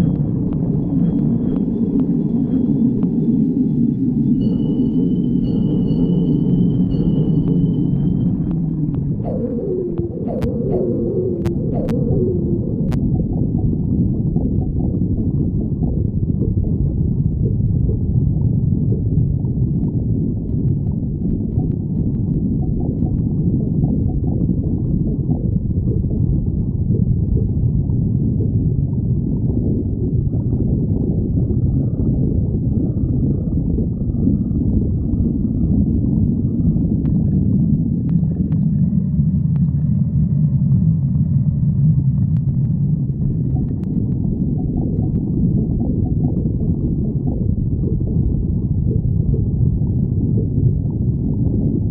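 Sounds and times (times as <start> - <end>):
stomach growling: 6.8 - 51.9.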